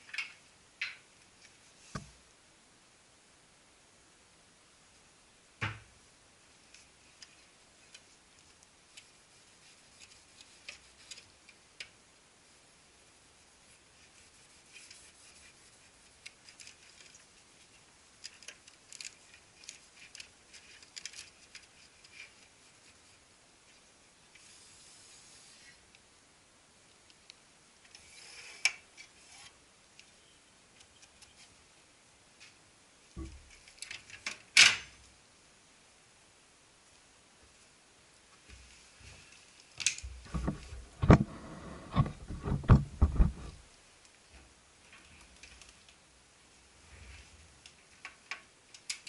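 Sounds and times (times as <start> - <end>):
small clicks and rubbing: 0.0 - 2.2, 6.5 - 12.0, 13.6 - 26.1, 26.8 - 31.6, 32.4 - 35.0, 38.3 - 46.1, 47.0 - 49.0.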